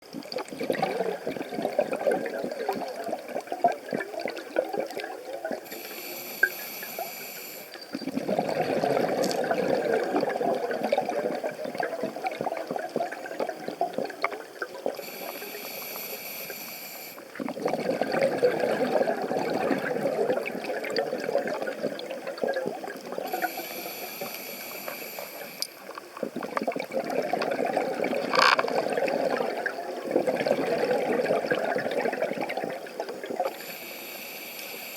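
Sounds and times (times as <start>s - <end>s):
exhaust bubbles bubbling: 0.1s - 5.6s, 7.9s - 14.2s, 17.4s - 23.5s, 26.2s - 33.5s
regulator inhalation hiss: 5.6s - 8.0s, 15.0s - 17.4s, 23.3s - 25.9s, 33.4s - 34.9s
faint clicks: 23.3s - 26.8s.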